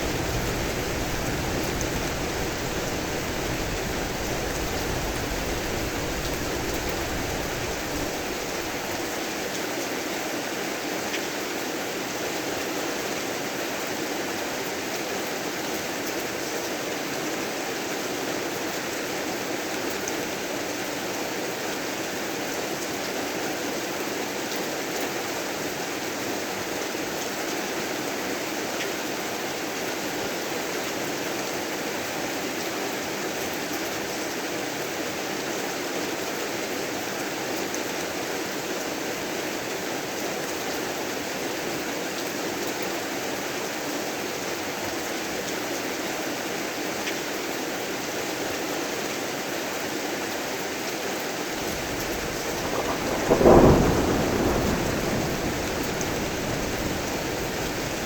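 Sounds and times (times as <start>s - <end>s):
thunderclap: 0.0s - 9.0s, 51.5s - 58.0s
heavy rain falling: 0.0s - 9.8s, 51.4s - 58.0s.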